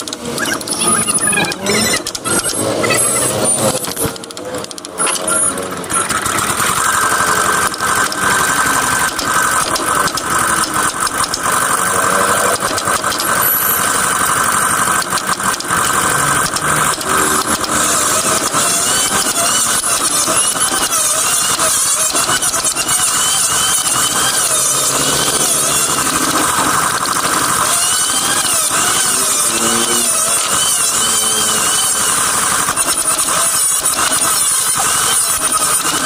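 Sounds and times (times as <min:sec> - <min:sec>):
power tool cutting wood: 0:00.0 - 0:36.0.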